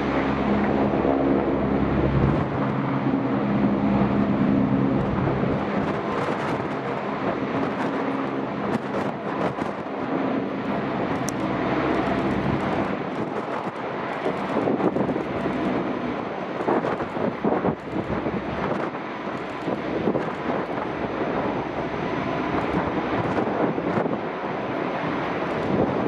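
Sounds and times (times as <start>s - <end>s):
turboprop engines droning: 0.0s - 26.0s.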